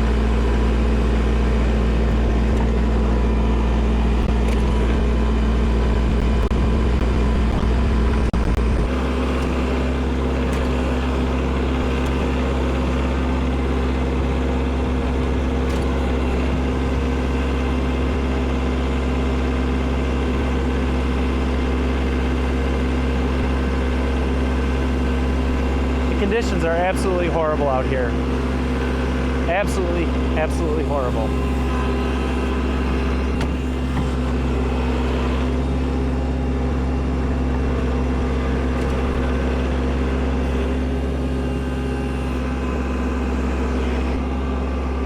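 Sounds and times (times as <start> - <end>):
tractor diesel engine running: 0.0 - 45.0.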